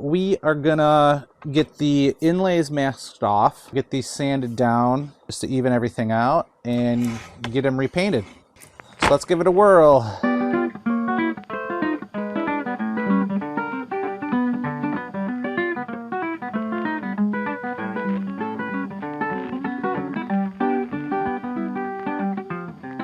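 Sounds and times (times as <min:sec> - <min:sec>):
plucked guitar notes: 0:10.1 - 0:23.0.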